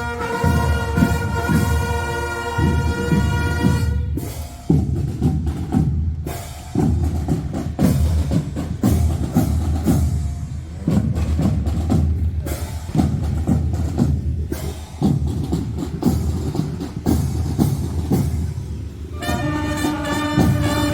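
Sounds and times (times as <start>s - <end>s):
held brass chord: 0.0s - 4.2s, 19.2s - 20.9s
marching drum cadence: 0.0s - 20.9s.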